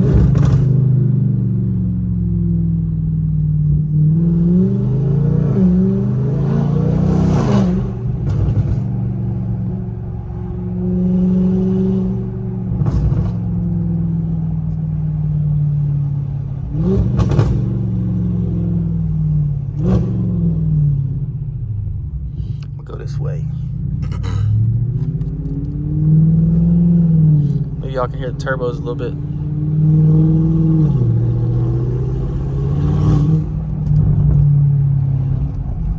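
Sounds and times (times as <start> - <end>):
car engine accelerating: 0.0 - 35.9.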